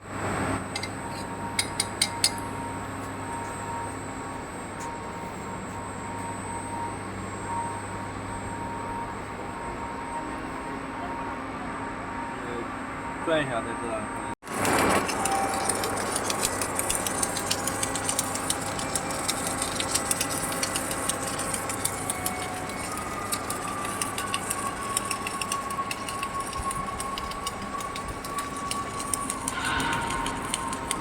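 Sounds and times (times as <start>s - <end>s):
thin steady whine: 0.0s - 31.0s
faint welding crackles: 14.5s - 31.0s
welding machine hiss and hum: 14.5s - 31.0s.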